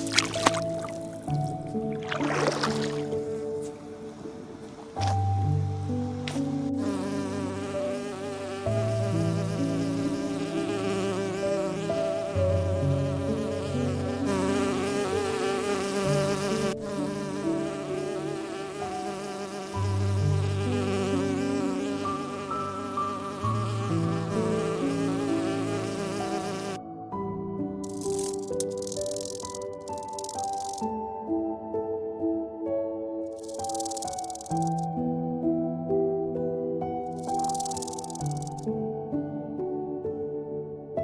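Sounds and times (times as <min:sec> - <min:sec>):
slow background music: 0:00.0 - 0:41.0
steady buzzing texture: 0:27.9 - 0:30.8, 0:33.4 - 0:34.9, 0:37.2 - 0:38.6.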